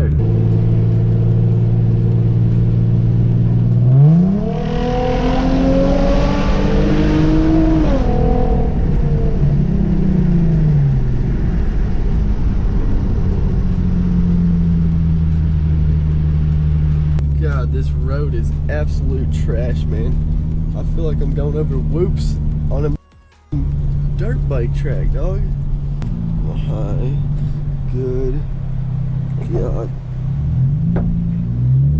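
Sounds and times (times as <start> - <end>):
car exhaust revving: 0.0 - 23.0, 23.6 - 31.9.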